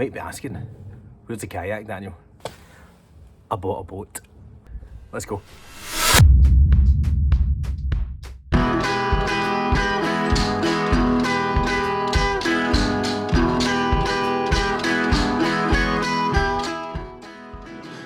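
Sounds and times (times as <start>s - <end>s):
guitar music with steady beat: 8.5s - 18.0s.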